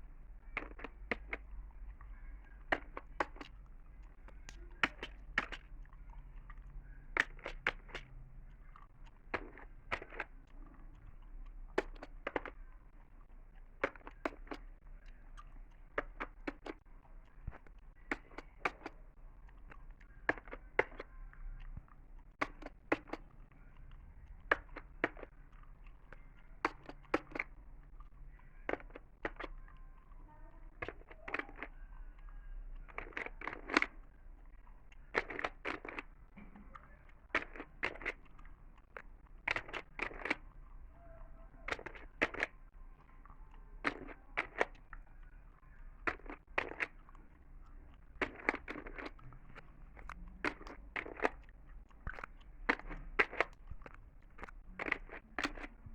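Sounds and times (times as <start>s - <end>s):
gum chewing clicks and smacks: 0.0s - 55.9s.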